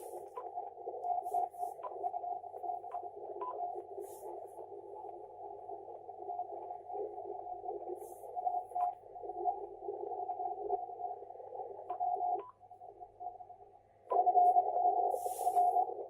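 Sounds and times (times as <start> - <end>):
narrow band radio hiss: 0.0 - 12.4, 14.2 - 16.0.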